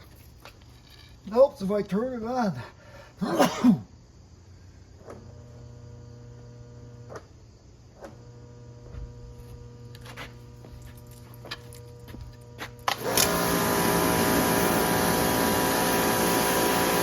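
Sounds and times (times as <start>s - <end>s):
pressure washer electrical hum: 5.0s - 17.0s.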